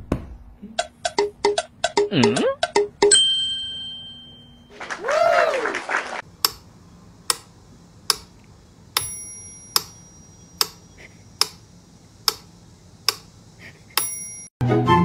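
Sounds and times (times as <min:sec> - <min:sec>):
sharp clicks: 0:06.4 - 0:06.7, 0:08.1 - 0:09.1, 0:12.2 - 0:13.3.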